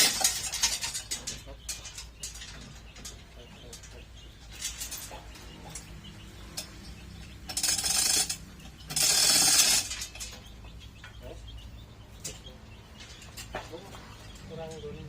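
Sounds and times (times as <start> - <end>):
chain rattling through hoist: 0.0 - 5.9, 6.6 - 10.5.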